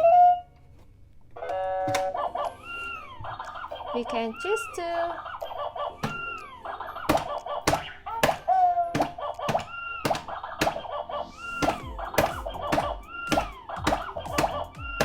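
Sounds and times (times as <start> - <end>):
plastic hammer hits: 6.0 - 6.4, 7.0 - 10.9, 11.6 - 15.0.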